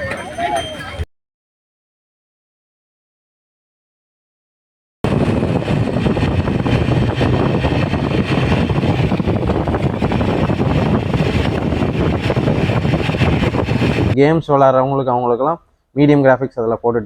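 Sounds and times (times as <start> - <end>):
moving vehicle rumble: 5.0 - 14.2
wind noise on microphone: 5.0 - 14.5.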